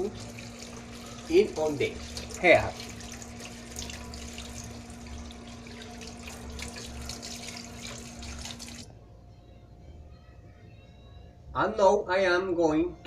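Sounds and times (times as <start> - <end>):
tap water running: 0.0 - 8.9
faint hum: 0.0 - 13.0.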